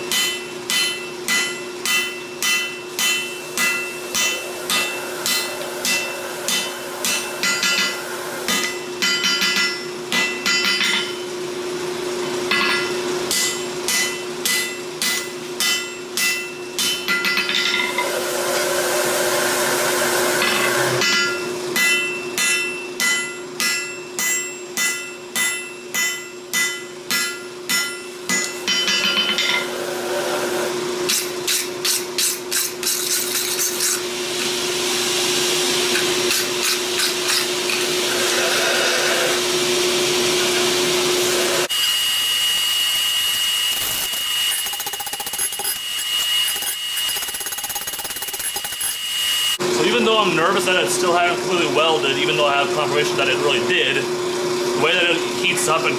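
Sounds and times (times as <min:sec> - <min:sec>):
hammer striking hot steel: 0:00.0 - 0:11.2, 0:12.5 - 0:18.0, 0:20.4 - 0:29.7, 0:31.0 - 0:34.0.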